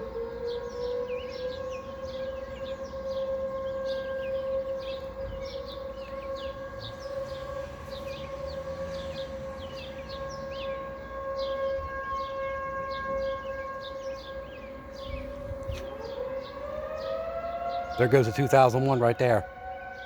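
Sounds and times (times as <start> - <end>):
outdoor warning sirens steady tone: 0.0 - 20.0
birds chirping: 18.0 - 19.5.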